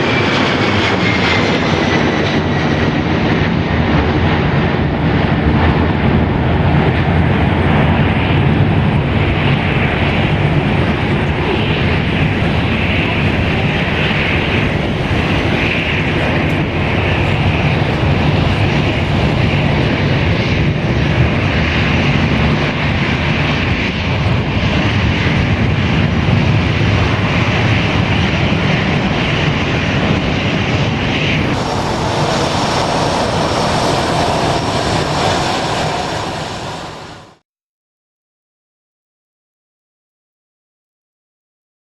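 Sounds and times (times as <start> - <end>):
jet engine rumble and hiss: 0.0 - 37.4.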